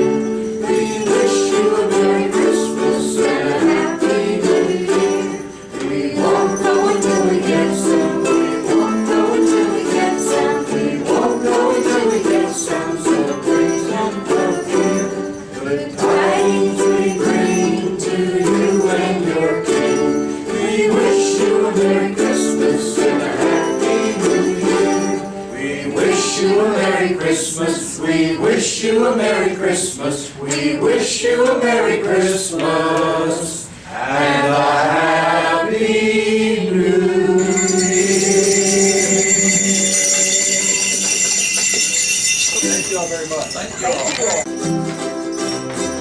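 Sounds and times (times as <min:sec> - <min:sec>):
jingle bells shaking: 0:00.0 - 0:26.7, 0:37.3 - 0:46.0
ukuleles strumming: 0:00.0 - 0:27.8, 0:36.7 - 0:46.0.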